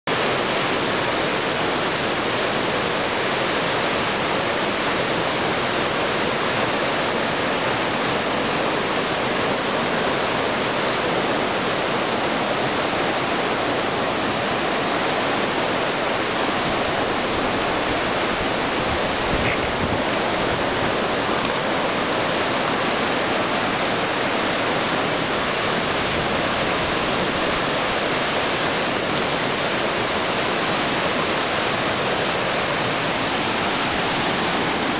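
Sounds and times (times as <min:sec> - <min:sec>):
whitewater rushing: 0:00.1 - 0:34.9.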